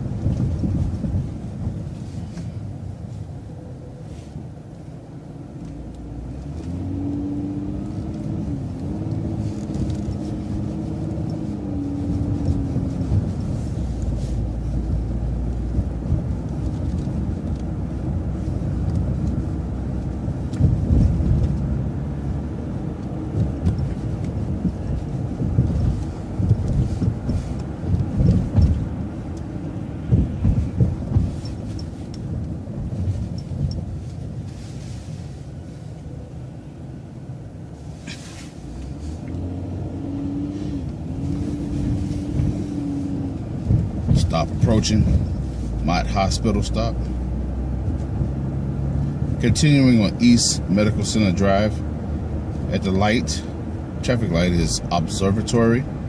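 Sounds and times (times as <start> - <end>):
motor coach engine rumble: 0.0 - 56.0
low thumps: 30.0 - 33.9.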